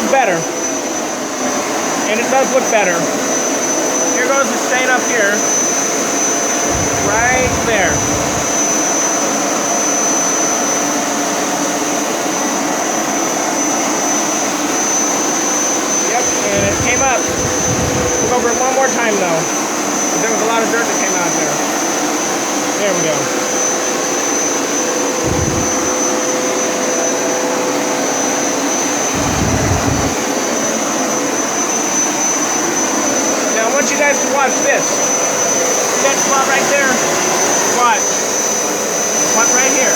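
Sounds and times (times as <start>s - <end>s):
carpet cleaner motor running: 0.0s - 39.9s
short low rumbles: 6.7s - 8.7s, 16.4s - 18.6s, 25.2s - 26.0s, 29.1s - 30.3s.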